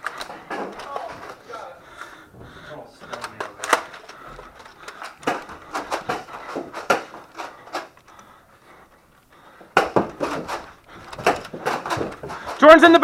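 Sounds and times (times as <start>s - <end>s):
foam balls hitting walls: 0.0s - 1.8s, 5.2s - 7.8s, 9.6s - 12.9s.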